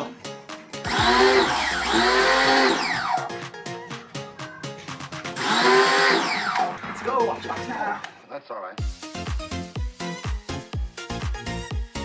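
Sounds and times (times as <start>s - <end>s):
music with drum beat: 0.0s - 5.6s, 8.8s - 12.0s
gliding pitched melody: 0.0s - 6.8s.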